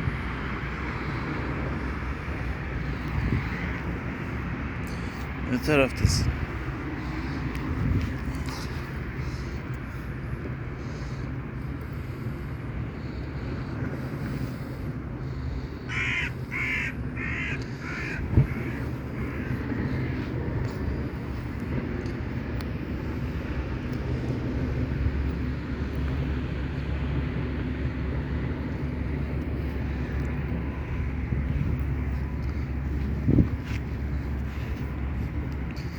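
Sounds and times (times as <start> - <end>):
low background rumble: 0.0 - 35.9
crow cawing: 15.9 - 20.2.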